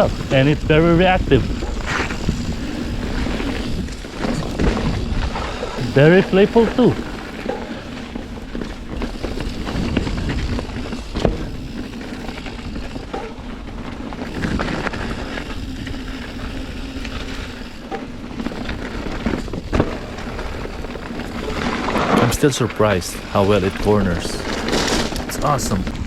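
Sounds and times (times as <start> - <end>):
wind on microphone: 0.0 - 17.6
bike knocking over bumps: 0.0 - 22.6
bike tyre and drivetrain rattle: 0.0 - 26.0.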